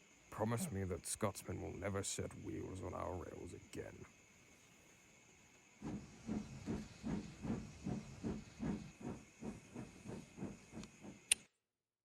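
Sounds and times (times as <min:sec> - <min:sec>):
steam hissing: 0:05.8 - 0:11.2
steam locomotive chuffing: 0:05.8 - 0:11.2.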